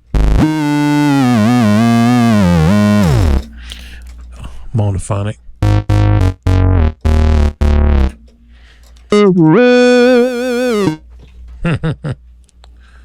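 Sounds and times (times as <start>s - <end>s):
synthesizer notes with vibrato: 0.0s - 3.5s, 5.6s - 8.2s, 9.1s - 11.0s.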